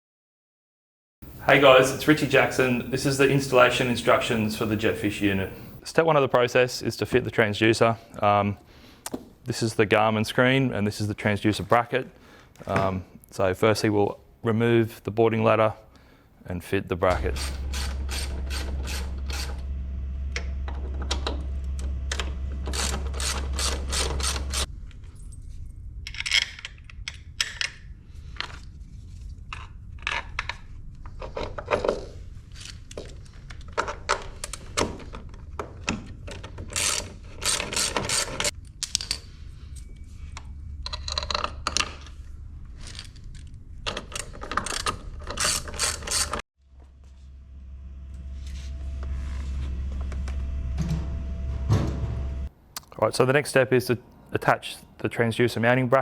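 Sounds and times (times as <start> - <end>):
steady low hum: 1.2 - 5.8, 16.9 - 26.1, 46.6 - 52.7.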